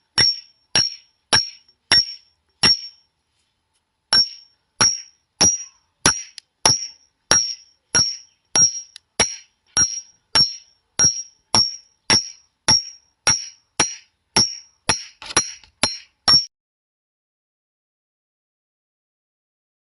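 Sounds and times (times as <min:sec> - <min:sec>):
sharp glass impacts: 0:00.2 - 0:03.0, 0:04.1 - 0:16.5.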